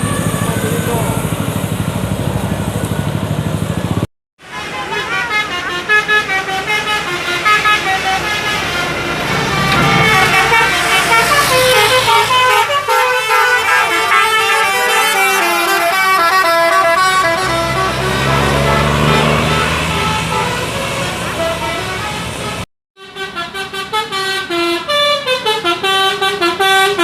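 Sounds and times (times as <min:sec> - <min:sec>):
bus horn playing a tune: 0:00.0 - 0:01.2, 0:04.4 - 0:27.0
low engine hum: 0:00.0 - 0:04.1.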